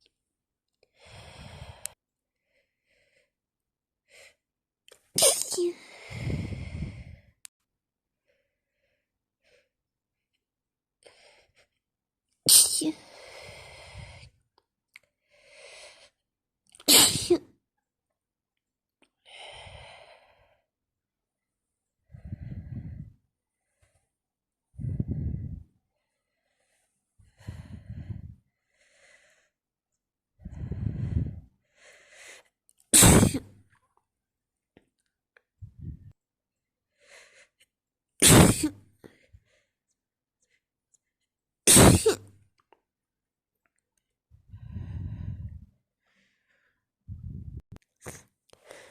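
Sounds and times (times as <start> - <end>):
woman breathing: 0.8 - 4.5, 5.6 - 7.5, 12.8 - 14.4, 15.1 - 16.2, 19.2 - 20.7, 22.0 - 29.6, 30.4 - 32.6, 35.6 - 36.2, 36.9 - 37.7, 44.4 - 48.9
woman sneezing: 5.2 - 5.8, 12.5 - 13.0, 16.9 - 17.4, 33.0 - 33.5, 38.2 - 38.8, 41.7 - 42.3.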